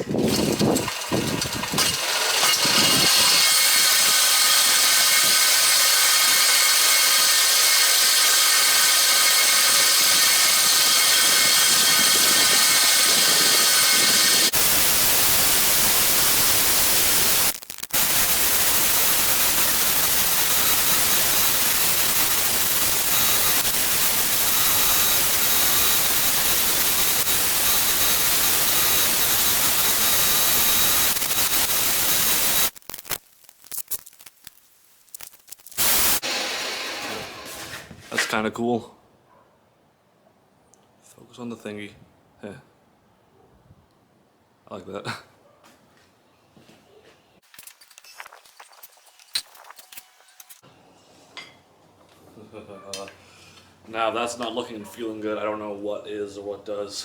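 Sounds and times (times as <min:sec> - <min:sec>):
power sander grinding: 0:00.0 - 0:32.9, 0:35.6 - 0:37.9
faint high whine: 0:11.5 - 0:33.2.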